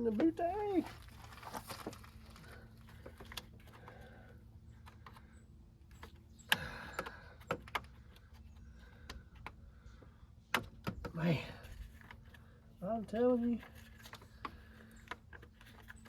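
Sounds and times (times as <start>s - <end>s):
hand tools clicking and tapping: 5.9s - 9.6s.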